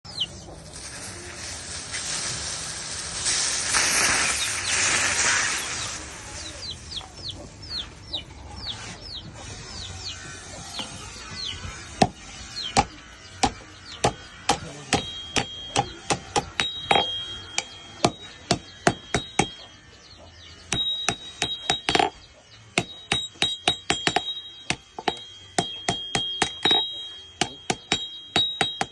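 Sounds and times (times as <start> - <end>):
hammer blows on steel anvil: 12.0 - 19.8, 20.6 - 22.2, 22.8 - 28.9.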